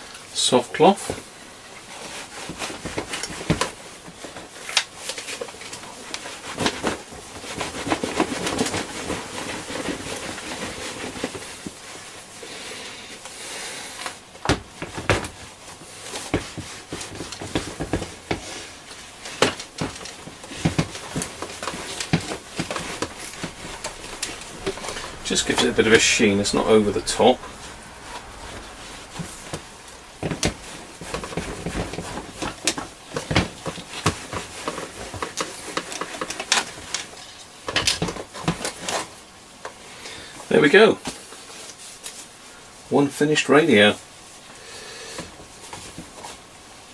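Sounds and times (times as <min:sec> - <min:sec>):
cloth rubbing radio case: 0:15.6 - 0:36.8.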